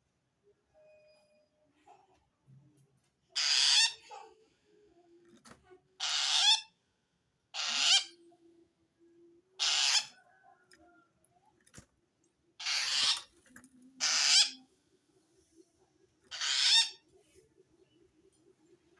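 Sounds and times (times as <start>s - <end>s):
shrike harsh rasping calls: 12.6s - 13.2s.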